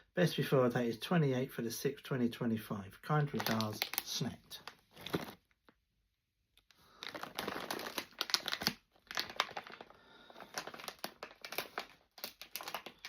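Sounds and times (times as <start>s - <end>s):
crisp packet crinkling: 3.3s - 5.8s, 6.7s - 13.0s.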